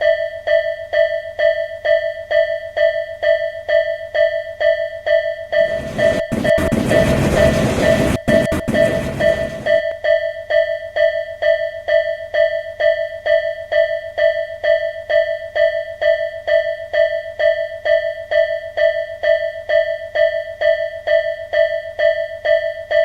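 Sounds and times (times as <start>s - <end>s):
level-crossing warning bell ringing: 5.5s - 9.8s.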